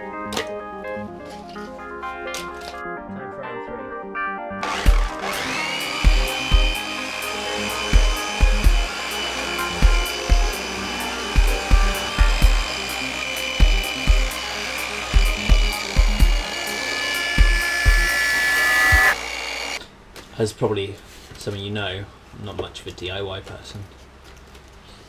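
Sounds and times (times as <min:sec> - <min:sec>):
electric sander whining: 0:04.6 - 0:19.8
music with kick drum and hi-hat: 0:06.0 - 0:06.8, 0:07.9 - 0:08.9, 0:09.8 - 0:10.6, 0:11.4 - 0:12.7, 0:13.6 - 0:14.4, 0:15.2 - 0:16.4.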